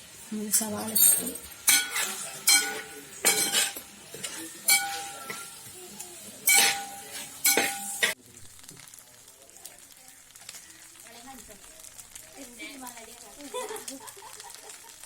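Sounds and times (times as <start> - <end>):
metal spoon clanking in a pan: 0.0 - 8.2.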